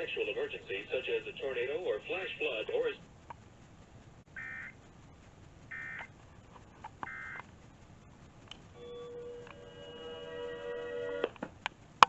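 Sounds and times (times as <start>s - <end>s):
steady low tone: 7.2s - 12.0s.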